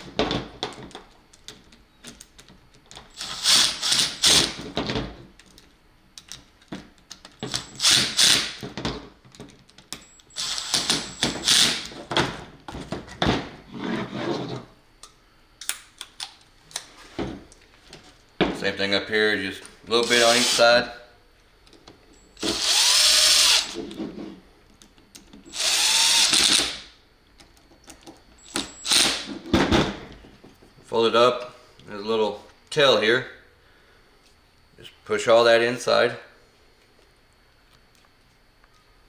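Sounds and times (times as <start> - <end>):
impact drill driving screws: 3.2 - 4.7, 7.5 - 8.6, 10.4 - 12.0, 20.0 - 20.6, 22.4 - 23.8, 25.5 - 26.8, 28.4 - 29.3.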